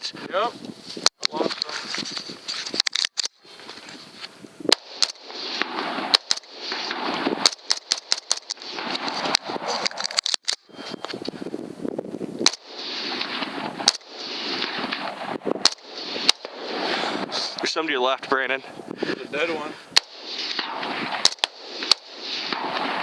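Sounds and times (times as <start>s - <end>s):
steady rushing noise: 4.7s - 10.2s, 10.9s - 23.0s
rifle shots: 4.7s - 10.8s, 12.4s - 18.0s, 19.9s - 23.0s.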